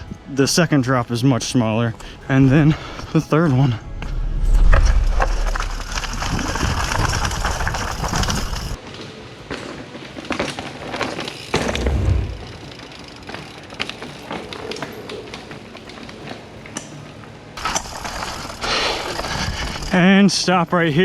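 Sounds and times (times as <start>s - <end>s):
loud rushing with low rumble: 3.7s - 7.9s
bike rattling over rock: 4.8s - 16.8s, 17.6s - 20.1s.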